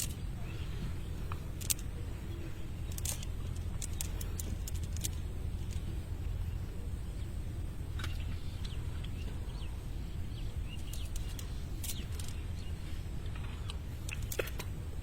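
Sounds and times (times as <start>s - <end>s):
small birds chirping: 0.0s - 15.0s
steady low rumble: 0.0s - 15.0s
sharp clicks: 2.9s - 5.9s.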